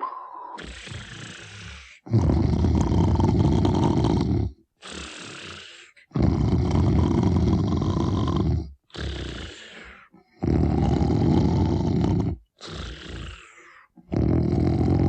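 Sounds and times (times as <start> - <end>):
rough rattling snores: 0.0 - 15.0
soft breath: 9.5 - 10.3, 12.6 - 14.0.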